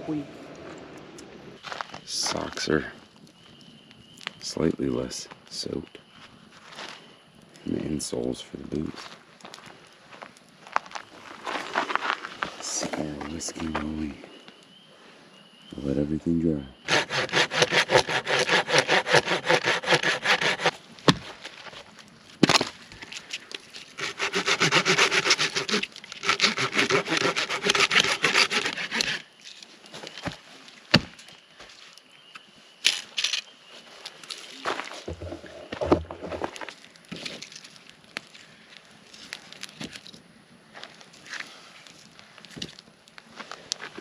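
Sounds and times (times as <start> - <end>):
hand saw cutting wood: 16.8 - 20.8, 24.0 - 29.3
wood knocks and snaps: 30.2 - 31.3.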